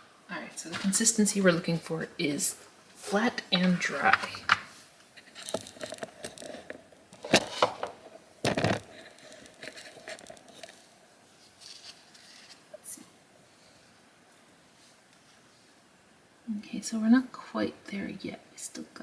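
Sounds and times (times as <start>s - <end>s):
wax paper rustling and crinkling: 8.5s - 12.7s.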